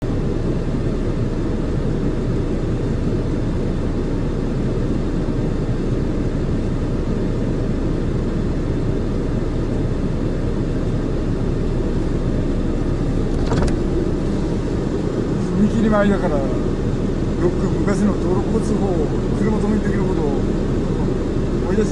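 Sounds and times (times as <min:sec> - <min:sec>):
car driving rumble: 0:11.9 - 0:21.9.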